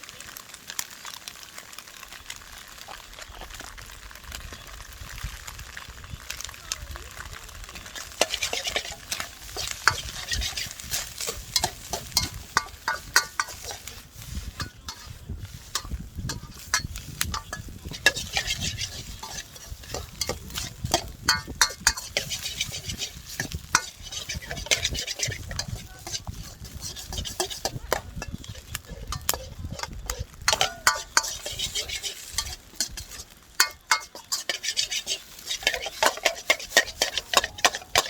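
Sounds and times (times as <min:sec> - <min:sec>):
food sizzling in a wok: 0:00.0 - 0:38.0
utensil scraping a wok: 0:07.7 - 0:38.0.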